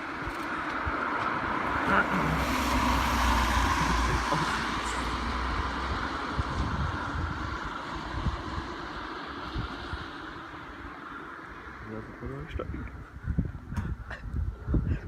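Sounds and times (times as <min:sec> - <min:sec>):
vehicle driving past: 0:01.1 - 0:10.7.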